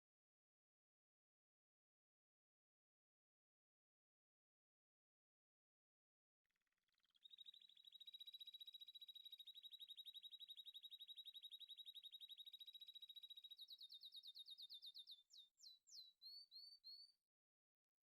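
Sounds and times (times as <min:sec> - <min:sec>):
high bird-like chirping trill: 0:07.2 - 0:17.1.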